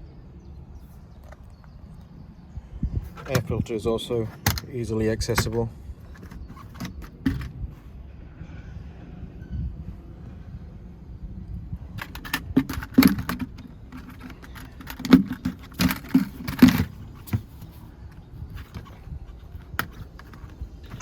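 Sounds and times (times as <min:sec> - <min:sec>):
plastic clips unclipping and rattling: 0:04.4 - 0:07.5, 0:12.0 - 0:17.5, 0:19.6 - 0:21.0.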